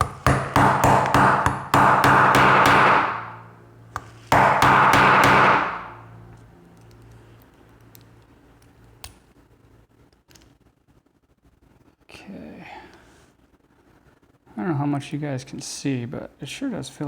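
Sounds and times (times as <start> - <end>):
hammer striking steel punch: 0.0 - 6.0.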